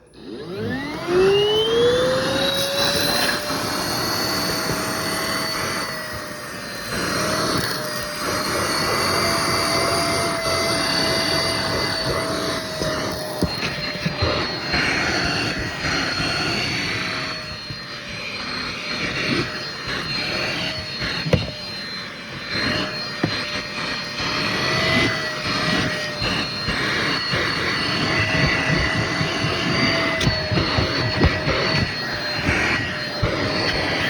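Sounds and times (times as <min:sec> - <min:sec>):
vacuum cleaner running: 0:00.0 - 0:34.0
vacuum nozzle clicks and knocks: 0:11.3 - 0:16.2, 0:21.0 - 0:21.7, 0:23.2 - 0:23.4, 0:27.4 - 0:34.0.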